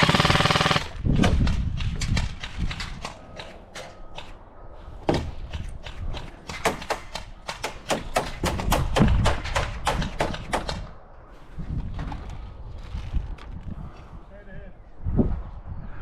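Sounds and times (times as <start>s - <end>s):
airsoft guns firing cracks: 0.0s - 4.4s.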